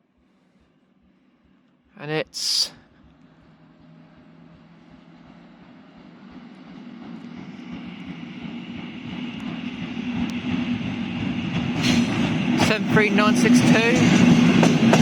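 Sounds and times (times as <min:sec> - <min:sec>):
locomotive hauling freight train: 0:03.3 - 0:15.0.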